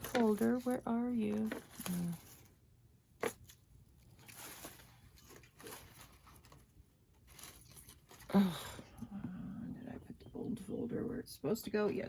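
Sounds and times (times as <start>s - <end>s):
paper rustling and shuffling: 0.0s - 8.6s.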